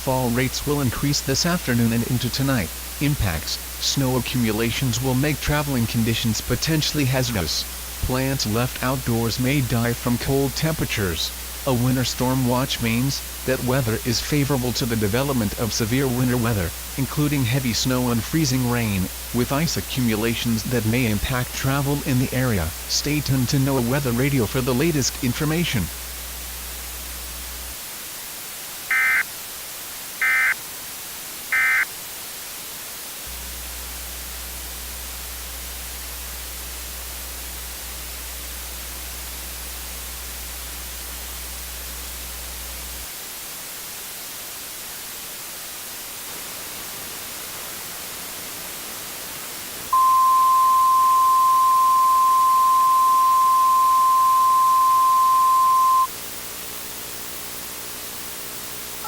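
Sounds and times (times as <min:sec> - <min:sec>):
radio hiss: 0:00.0 - 0:59.0
steady warning alarm tone: 0:28.9 - 0:29.2, 0:30.2 - 0:30.6, 0:31.5 - 0:31.8, 0:49.9 - 0:56.1
digital data bursts: 0:28.9 - 0:29.3, 0:31.5 - 0:31.8, 0:50.0 - 0:59.0.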